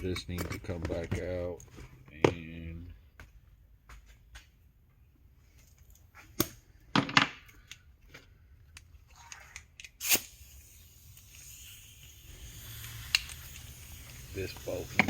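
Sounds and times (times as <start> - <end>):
metal tools clanking on metal: 0.0 - 1.3.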